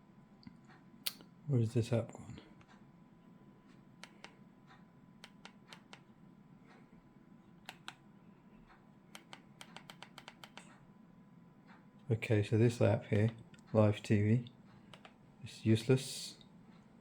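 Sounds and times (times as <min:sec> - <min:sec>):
remote control buttons clicking: 0:04.0 - 0:04.4, 0:05.2 - 0:06.1, 0:07.6 - 0:08.0, 0:09.1 - 0:10.8, 0:14.9 - 0:15.2.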